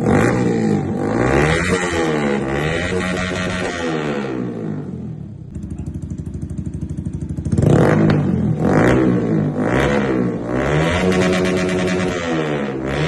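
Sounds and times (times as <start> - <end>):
motorcycle engine revving: 0.0 - 13.0
motorcycle engine idling: 4.5 - 9.6.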